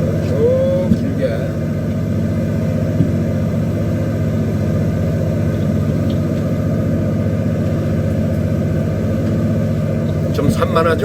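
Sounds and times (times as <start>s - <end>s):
boat engine rumbling: 0.0s - 11.0s.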